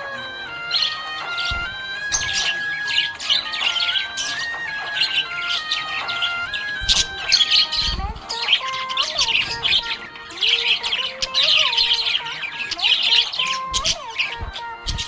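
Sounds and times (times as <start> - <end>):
budgerigars chirping: 0.0 - 15.0.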